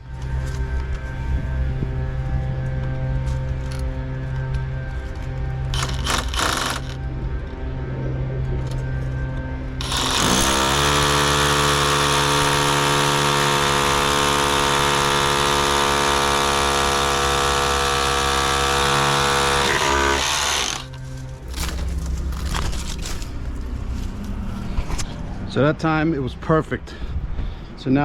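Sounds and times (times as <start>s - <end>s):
power drill boring: 5.7s - 7.0s, 9.8s - 21.0s.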